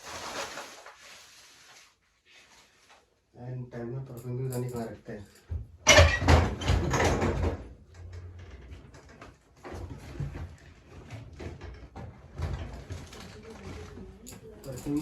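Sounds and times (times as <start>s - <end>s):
knocks and rustling inside cupboard: 5.6s - 8.4s, 9.6s - 15.0s.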